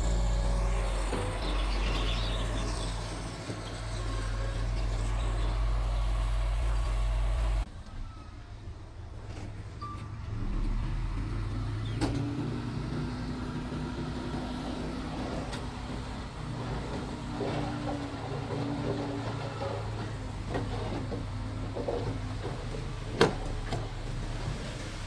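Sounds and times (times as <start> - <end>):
steady whine: 0.0 - 8.5
bulldozer diesel engine running: 0.0 - 25.0.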